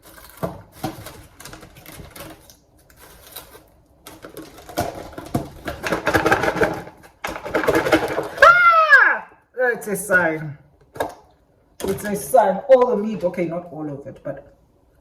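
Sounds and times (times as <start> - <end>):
plastic container clicks and rustles: 0.0 - 8.4
salad rattling in plastic container: 4.2 - 8.4.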